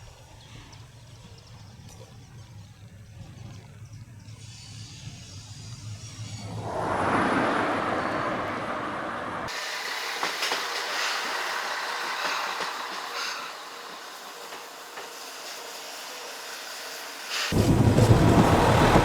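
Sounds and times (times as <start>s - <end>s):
deep train rumble: 6.3s - 14.0s, 17.5s - 19.0s
train rushing noise: 6.3s - 19.0s.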